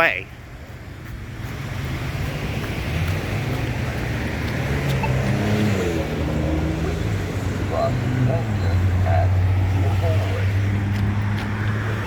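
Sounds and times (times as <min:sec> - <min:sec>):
vehicles passing: 0:00.0 - 0:12.0.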